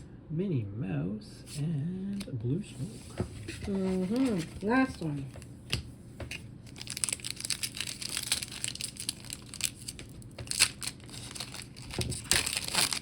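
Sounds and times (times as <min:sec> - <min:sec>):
foil wrapper tearing and crinkling: 0:06.7 - 0:13.0.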